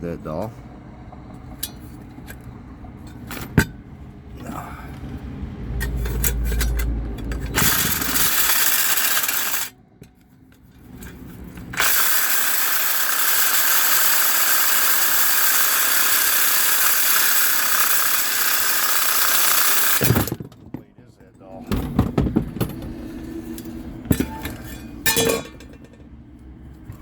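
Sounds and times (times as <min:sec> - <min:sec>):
power tool grinding metal: 0:07.5 - 0:09.7, 0:11.7 - 0:20.4
knocks: 0:21.7 - 0:22.9.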